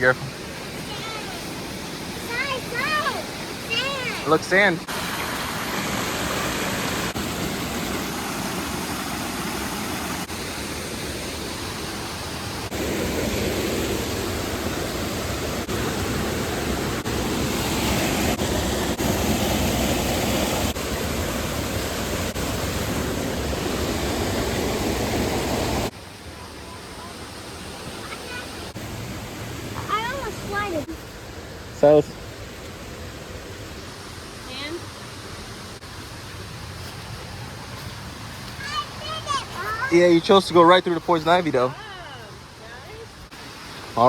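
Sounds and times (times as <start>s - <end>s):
creek water rushing: 0.0s - 44.0s.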